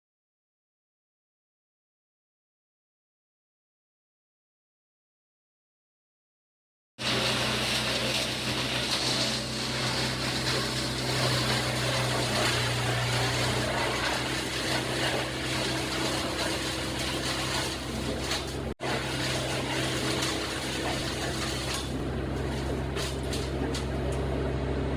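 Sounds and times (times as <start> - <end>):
engine running with loud hiss: 7.0 - 24.9.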